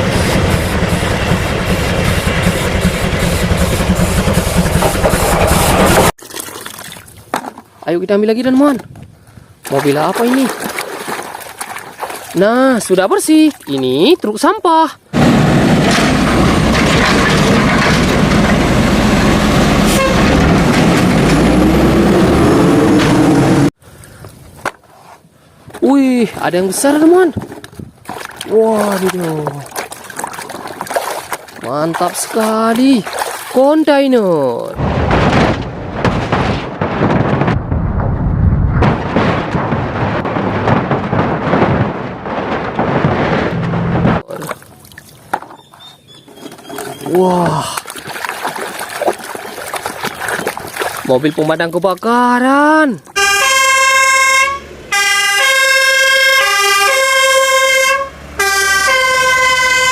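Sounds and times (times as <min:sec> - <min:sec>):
heavy truck running: 0:00.0 - 0:06.2, 0:15.1 - 0:23.7, 0:38.7 - 0:44.3, 0:53.2 - 0:59.9.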